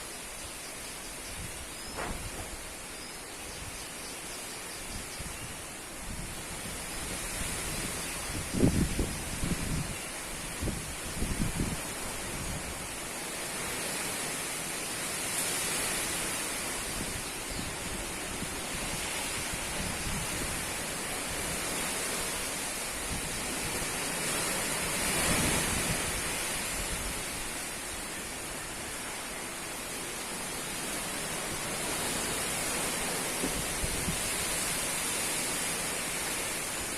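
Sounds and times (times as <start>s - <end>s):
strong wind blowing: 6.0s - 12.8s.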